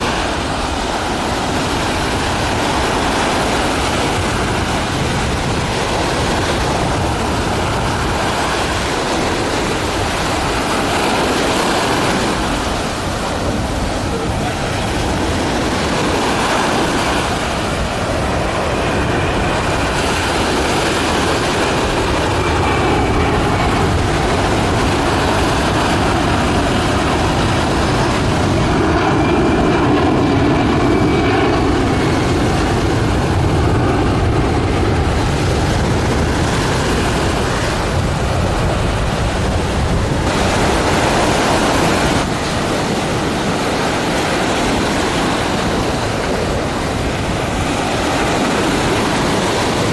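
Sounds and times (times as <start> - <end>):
high jet whine: 0.0 - 49.9
jet engines roaring: 0.0 - 49.9.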